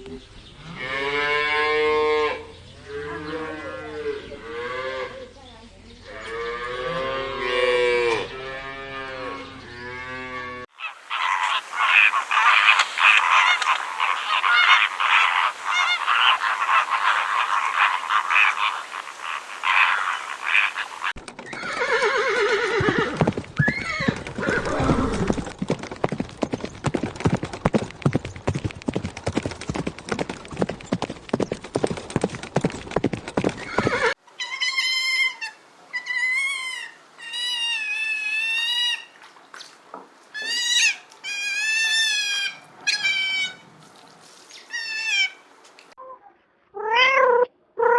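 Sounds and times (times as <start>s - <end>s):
birds honking: 10.7s - 21.2s
hooves beating: 10.8s - 21.1s, 22.8s - 34.1s
cat meowing: 46.8s - 47.9s.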